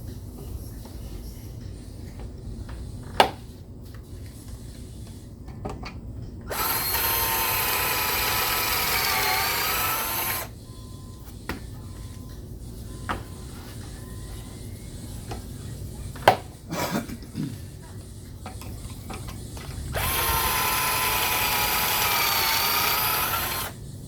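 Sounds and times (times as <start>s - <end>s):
power drill boring into wood: 6.5s - 10.5s, 19.9s - 23.8s.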